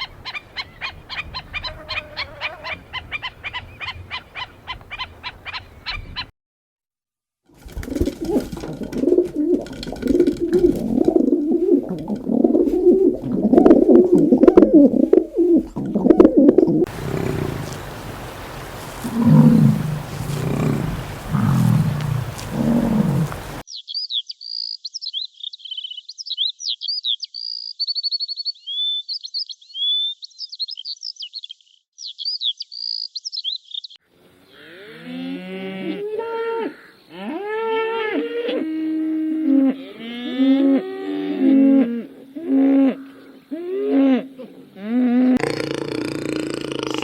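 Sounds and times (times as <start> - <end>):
cattle mooing: 16.9 - 23.6, 44.8 - 47.0.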